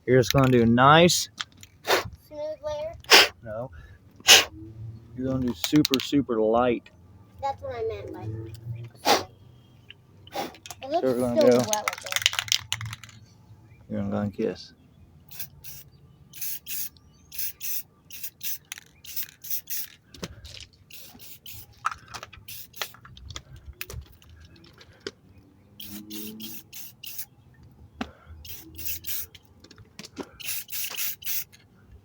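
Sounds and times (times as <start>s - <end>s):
spray can hissing bursts: 3.1s - 3.3s, 15.3s - 20.0s, 20.9s - 21.8s, 22.4s - 23.0s, 25.8s - 27.3s, 28.4s - 29.4s, 30.4s - 31.6s.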